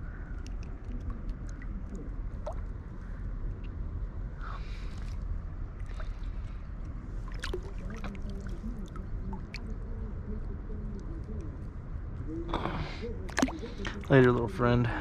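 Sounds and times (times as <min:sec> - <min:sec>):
short sharp clicks or splashes: 0:13.3 - 0:14.0.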